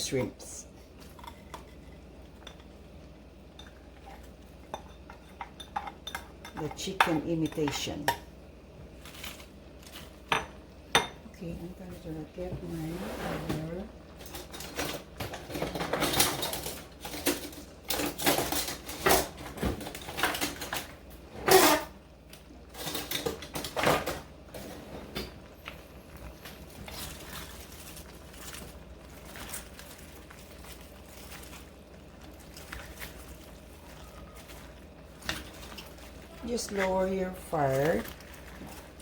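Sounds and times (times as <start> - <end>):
faint cooking background: 0.0 - 39.0
utensils and containers clattering: 3.5 - 8.2, 13.1 - 22.0, 22.6 - 25.5, 26.4 - 39.0.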